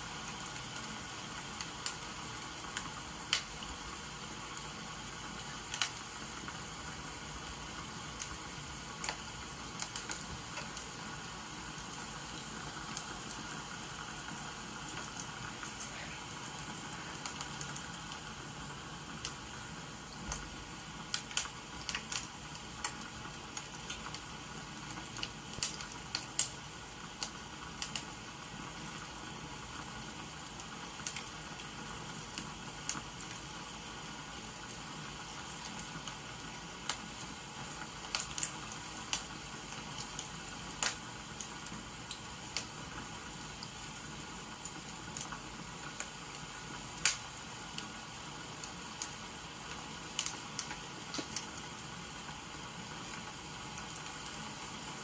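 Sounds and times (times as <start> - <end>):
rain hissing: 0.0 - 55.0
wood fire crackling and popping: 0.0 - 55.0.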